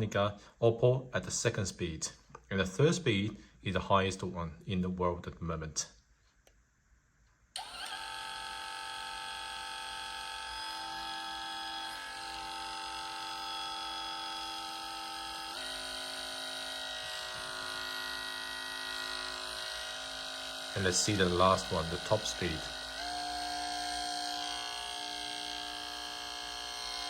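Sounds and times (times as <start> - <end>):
grooming clipper humming: 7.6 - 27.0.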